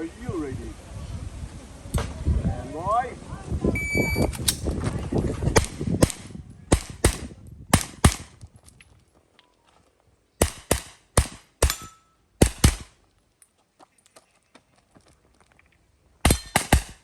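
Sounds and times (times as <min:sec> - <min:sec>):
handgun shots: 0:05.6 - 0:08.3, 0:10.4 - 0:12.9, 0:16.3 - 0:17.0.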